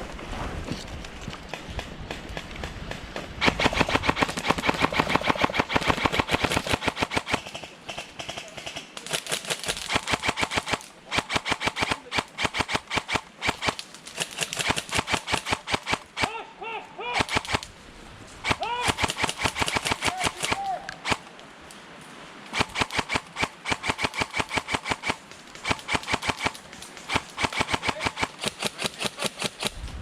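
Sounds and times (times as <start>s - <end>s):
airsoft guns firing rapidly: 3.4s - 16.4s, 17.2s - 17.7s, 18.4s - 21.2s, 22.5s - 29.8s.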